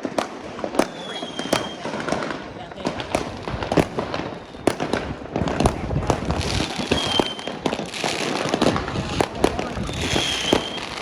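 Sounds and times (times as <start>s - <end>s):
firework whistling: 0.0s - 11.0s
fireworks bangs: 0.0s - 11.0s
fireworks crackling: 0.0s - 11.0s.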